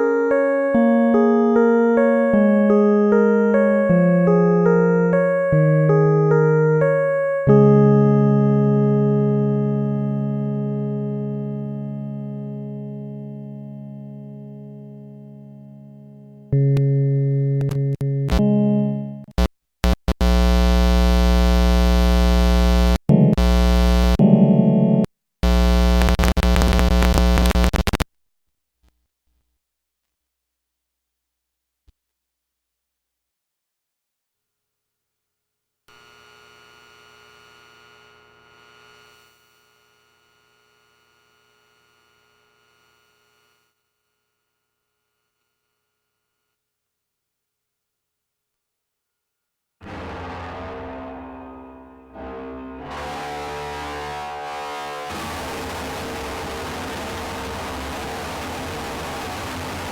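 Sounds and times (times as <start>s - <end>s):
held synthesizer chord: 0.0s - 19.4s, 23.1s - 25.1s, 49.8s - 59.9s
loud droning synth tones: 49.8s - 59.9s.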